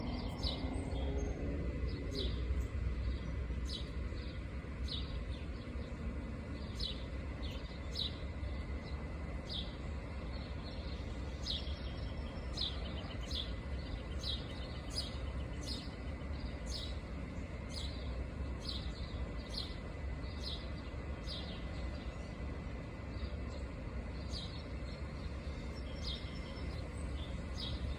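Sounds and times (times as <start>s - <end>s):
low background rumble: 0.0s - 27.9s
bird chirping: 23.1s - 27.9s.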